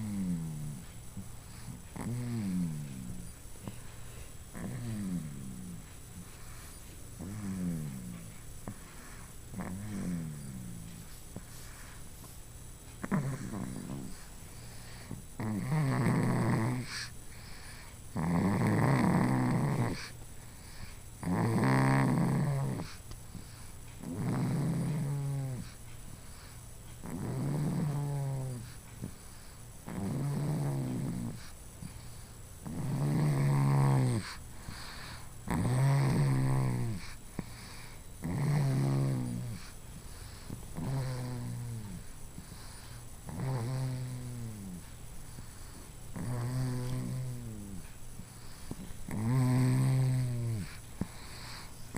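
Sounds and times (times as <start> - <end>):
person snoring: 0.0 - 0.8, 1.6 - 3.8, 4.5 - 5.8, 7.2 - 11.1, 13.0 - 20.1, 21.2 - 23.0, 24.0 - 25.8, 27.0 - 28.8, 29.9 - 31.5, 32.6 - 39.7, 40.3 - 44.8, 46.1 - 47.8, 48.4 - 51.9.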